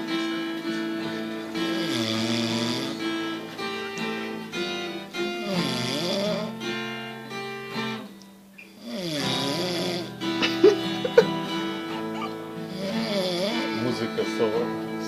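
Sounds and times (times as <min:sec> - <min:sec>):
acoustic guitar strumming: 0:00.0 - 0:15.0
person snoring: 0:01.1 - 0:03.5, 0:05.2 - 0:06.6, 0:08.8 - 0:14.1.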